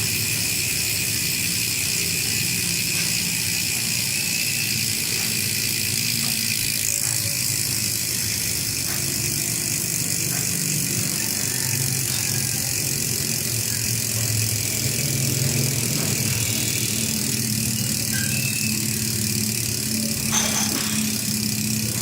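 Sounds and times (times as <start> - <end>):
bicycle freehub ratcheting buzz: 0.0 - 22.0.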